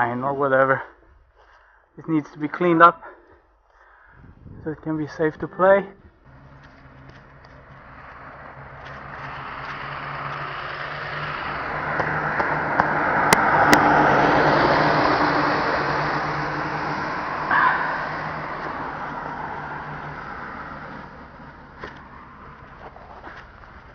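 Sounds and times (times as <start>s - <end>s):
vehicle driving past: 6.2s - 23.9s.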